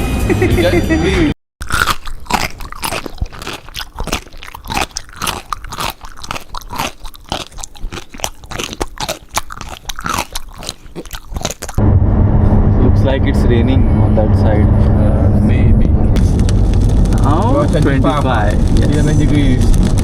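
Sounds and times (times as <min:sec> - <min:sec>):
chewing crunchy food: 0:01.6 - 0:11.8.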